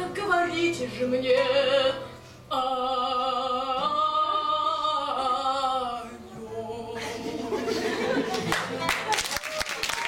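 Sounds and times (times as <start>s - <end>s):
woman singing with vibrato: 0.0s - 7.1s
audience applause: 8.3s - 10.0s.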